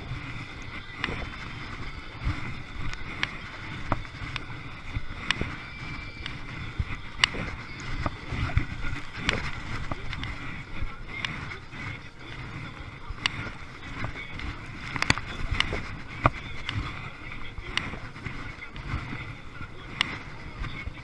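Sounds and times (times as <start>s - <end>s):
water splashing around kayak: 0.0s - 21.0s
wind rumble: 0.0s - 21.0s.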